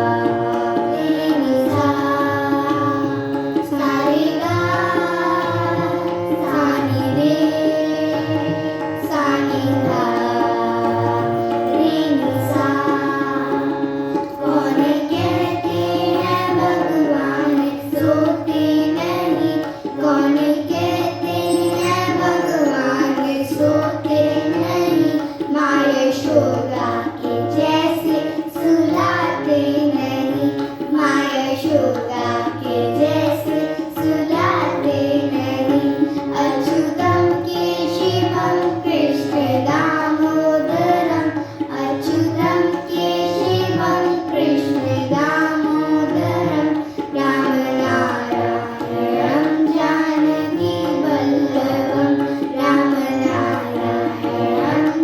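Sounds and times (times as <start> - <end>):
children singing in unison: 0.0 - 55.0
instrumental accompaniment: 0.0 - 55.0
tabla drum rhythm: 0.0 - 55.0.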